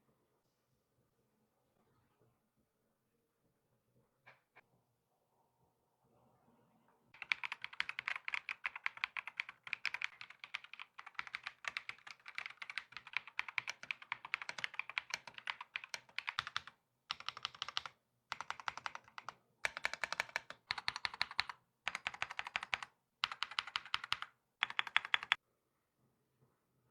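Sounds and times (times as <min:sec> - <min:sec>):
typing on mechanical keyboard: 0:07.2 - 0:25.4.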